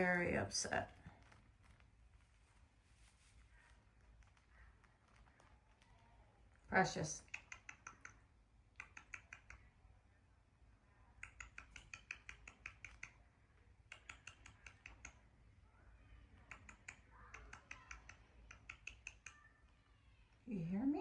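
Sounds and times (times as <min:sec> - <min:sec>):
parrot beak clicking on metal: 0:07.2 - 0:09.7, 0:11.2 - 0:13.2, 0:13.8 - 0:15.3, 0:16.4 - 0:19.5.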